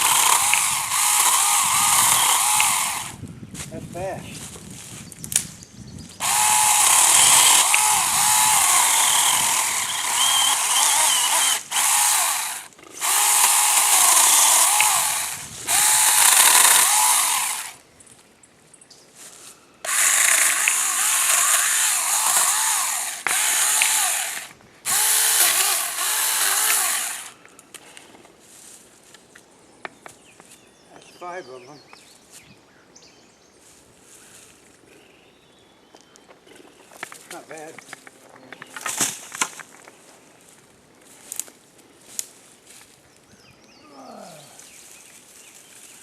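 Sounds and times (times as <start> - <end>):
electric mini chainsaw whining: 0.0 - 3.2, 6.2 - 17.8, 19.8 - 27.4.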